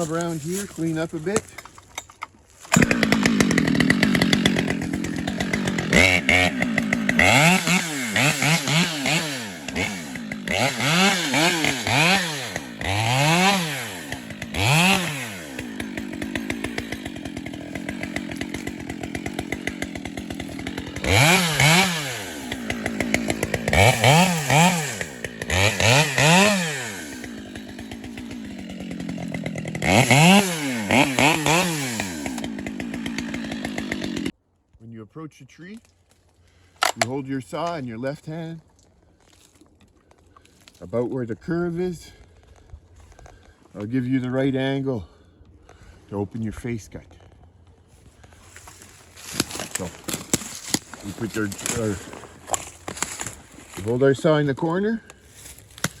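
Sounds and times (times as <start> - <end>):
chainsaw revving and idling: 0.0 - 1.6, 2.6 - 34.4, 36.6 - 38.5, 46.8 - 56.0.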